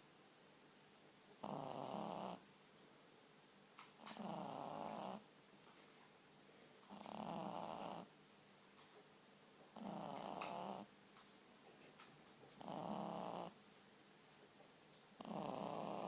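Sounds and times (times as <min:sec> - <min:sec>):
puppy snoring: 0:01.4 - 0:02.4, 0:04.0 - 0:05.3, 0:06.9 - 0:08.1, 0:09.8 - 0:10.9, 0:12.5 - 0:13.6, 0:15.2 - 0:16.0.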